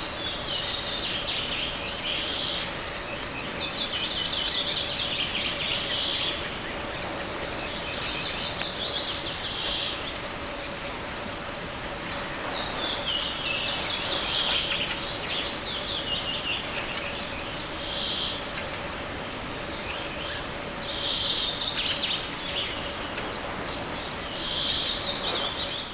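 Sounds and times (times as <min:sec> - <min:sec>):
songbirds singing: 0:00.0 - 0:25.9
river rushing: 0:04.0 - 0:25.9.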